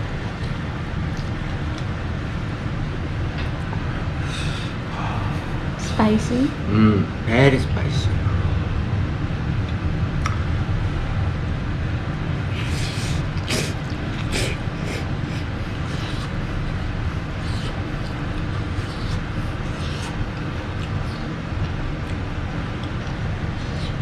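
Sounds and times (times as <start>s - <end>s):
steady low hum: 0.0s - 24.0s
noodles slurped and chewed: 12.6s - 16.3s.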